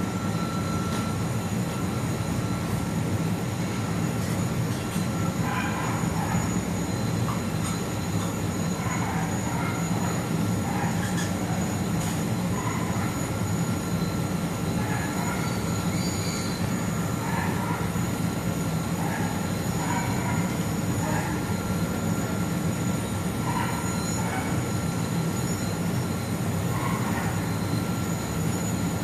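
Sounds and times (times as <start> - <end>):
air conditioner compressor humming: 0.0 - 29.0.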